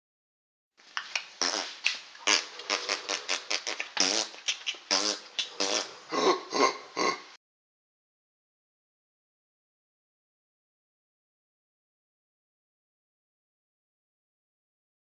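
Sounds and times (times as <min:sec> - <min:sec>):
man making raspberry mouth noises: 0:00.9 - 0:07.4.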